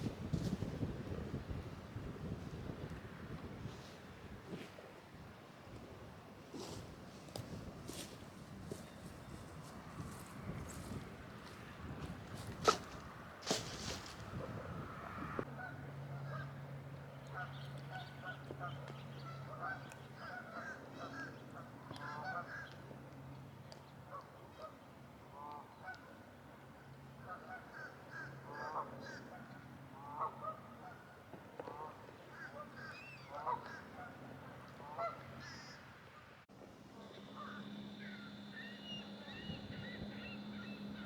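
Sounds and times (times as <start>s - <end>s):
geese honking: 17.3s - 22.8s, 27.2s - 35.8s, 37.0s - 41.0s
faint low hum: 36.5s - 41.0s.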